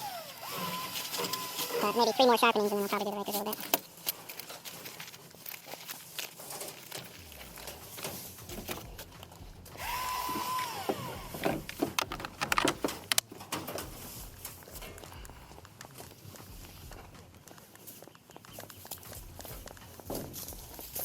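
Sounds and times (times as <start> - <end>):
battery chainsaw whine: 0.0 - 2.5, 9.8 - 12.9
clicks and knocks of handling: 11.4 - 21.0.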